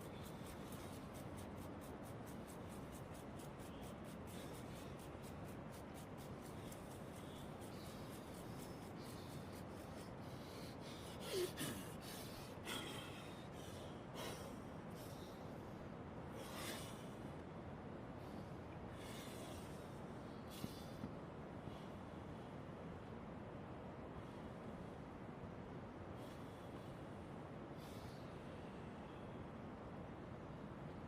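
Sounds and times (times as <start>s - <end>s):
repeated rubbing strokes: 0.0s - 12.6s
steady hiss: 0.0s - 31.0s.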